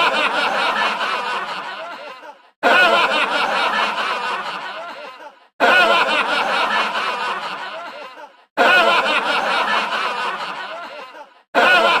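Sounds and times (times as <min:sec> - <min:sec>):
human laughter: 0:00.0 - 0:12.0.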